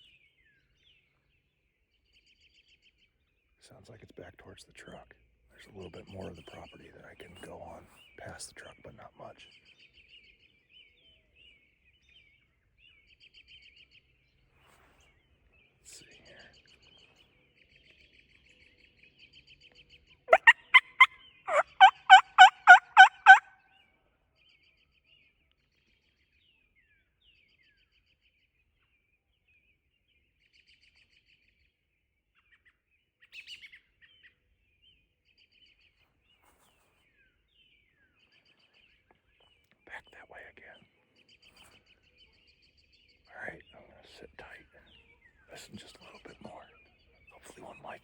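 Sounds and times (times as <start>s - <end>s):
small birds chirping: 2.8s - 23.5s, 32.5s - 48.0s
distant turkey gobble: 20.3s - 23.5s
turkey call yelps: 20.3s - 23.5s.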